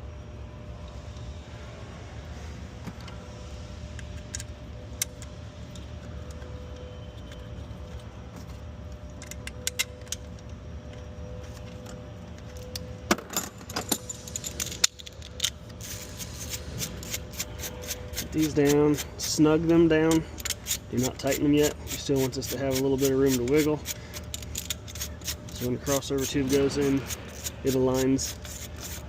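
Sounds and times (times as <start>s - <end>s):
steady low hum: 0.0s - 29.0s
metal clinks of bolts and tools: 11.8s - 15.8s.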